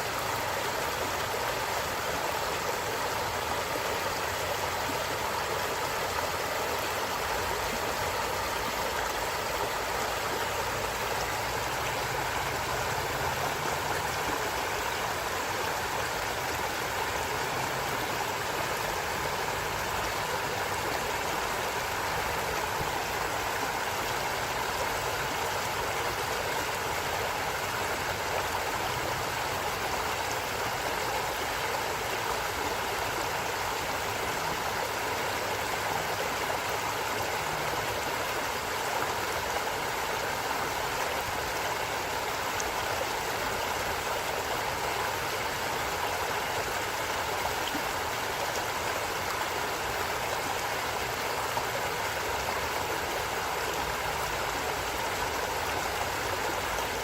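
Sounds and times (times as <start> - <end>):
stream flowing: 0.0 - 57.0.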